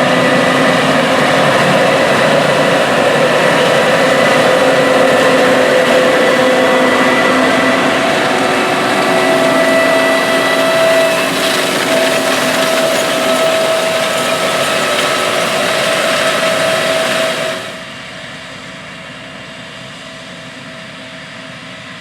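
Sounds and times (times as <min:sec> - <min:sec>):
machinery whining tones: 0:00.0 - 0:18.4
farm machine engine drone: 0:00.0 - 0:22.0.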